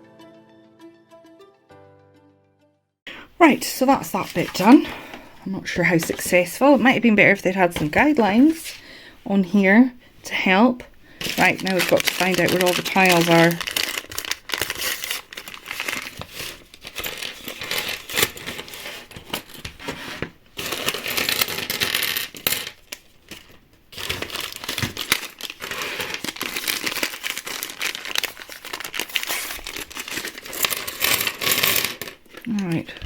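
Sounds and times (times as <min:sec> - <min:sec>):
packaging crinkling and rustling: 0:11.2 - 0:33.0.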